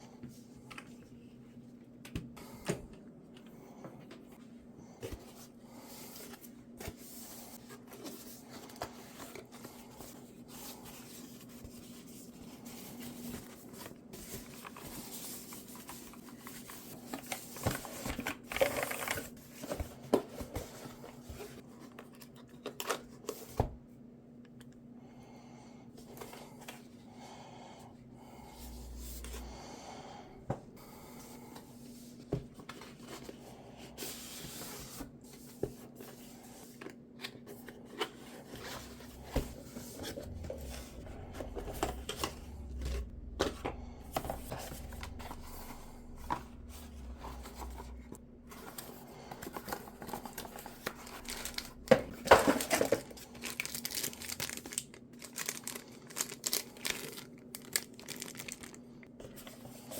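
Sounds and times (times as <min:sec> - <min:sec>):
plastic and paper crinkling: 0:06.9 - 0:23.5, 0:34.4 - 0:59.9.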